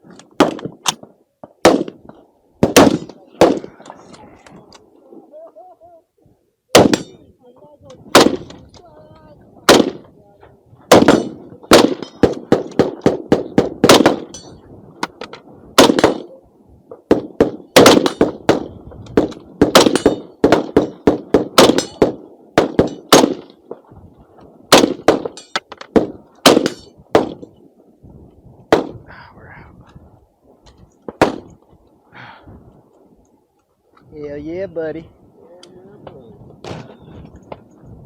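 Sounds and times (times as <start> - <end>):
gunshots: 1.6 - 2.0, 2.6 - 3.8, 6.7 - 7.2, 8.1 - 8.6, 9.7 - 10.1, 10.9 - 14.4, 15.8 - 16.3, 17.1 - 23.6, 24.7 - 27.4, 28.7 - 29.0, 31.2 - 31.5.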